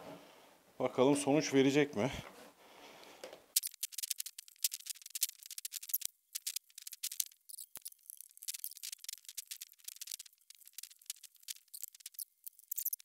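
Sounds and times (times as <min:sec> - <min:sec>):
wire mesh clicking and crackling: 0:03.6 - 0:13.0.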